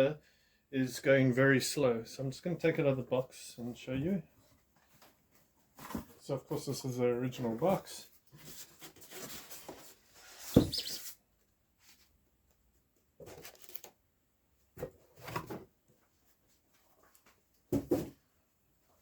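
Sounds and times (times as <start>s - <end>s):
cardboard box rustling and scraping: 8.3s - 11.2s.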